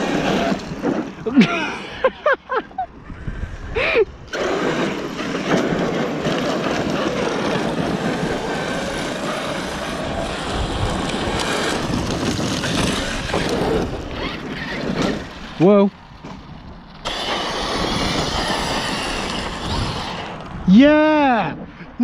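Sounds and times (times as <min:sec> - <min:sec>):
electric motors whining: 0:04.3 - 0:15.6, 0:17.0 - 0:20.7
tyres churning stones: 0:04.3 - 0:20.6.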